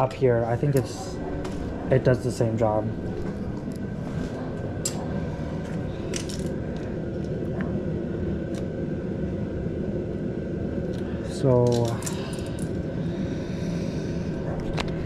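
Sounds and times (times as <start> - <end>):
steady background hum: 0.0 - 15.0
small parts clicking and tapping: 11.6 - 12.8.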